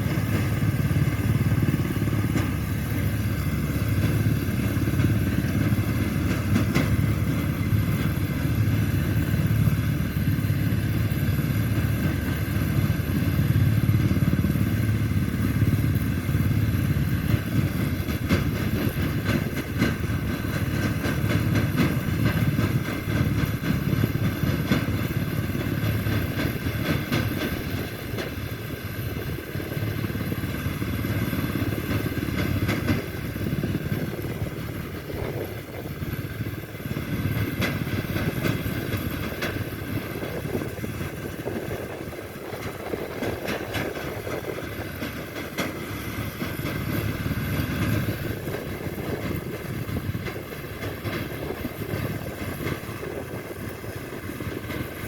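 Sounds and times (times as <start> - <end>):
low engine rumble: 0.0 - 55.0.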